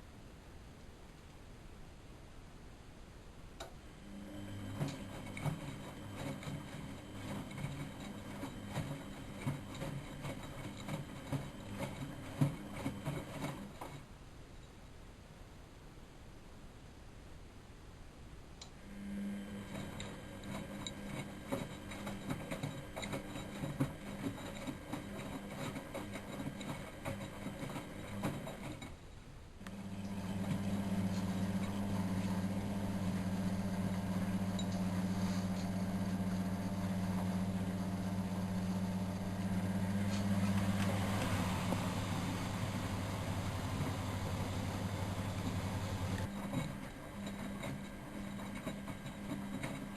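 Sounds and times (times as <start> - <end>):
washing machine motor hum: 3.9 - 14.1, 18.7 - 28.9, 29.6 - 49.9
washing machine rattling and clicking: 4.6 - 14.0, 19.6 - 28.9, 35.7 - 49.9.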